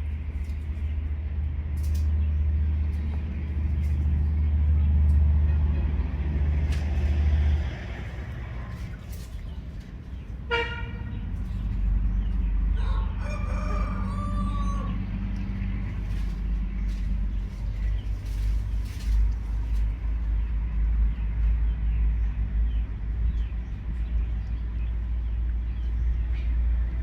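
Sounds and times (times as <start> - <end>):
steady low rumble: 0.0 - 27.0
rooster crowing: 12.8 - 15.1.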